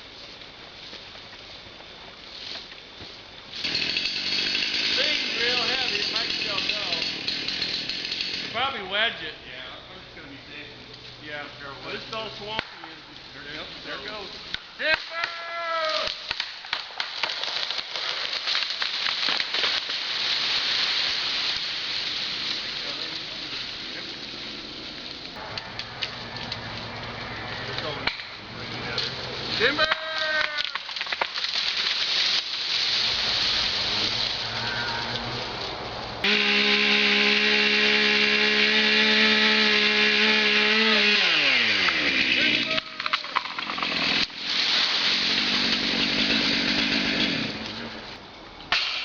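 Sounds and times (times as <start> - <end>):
chainsaw running at high revs: 3.6 - 8.6, 36.2 - 42.8, 43.6 - 44.4, 45.1 - 47.8
noisy hiss: 8.5 - 17.0, 18.4 - 25.5, 27.8 - 36.3, 47.4 - 49.0
wood cracking and snapping: 14.5 - 24.4, 27.7 - 33.1, 42.7 - 47.8
foliage swishing: 31.4 - 36.2.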